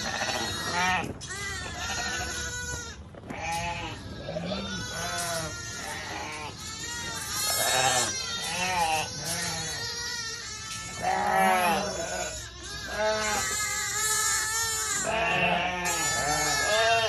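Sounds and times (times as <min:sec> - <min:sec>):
sheep bleating: 0:00.0 - 0:17.0.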